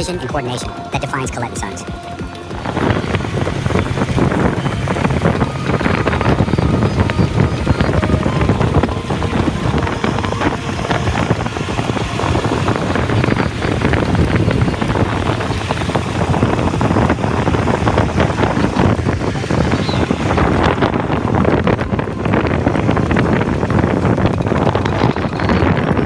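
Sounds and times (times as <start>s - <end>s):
vehicle running: 0.0s - 26.0s
wind buffeting microphone: 1.6s - 26.0s.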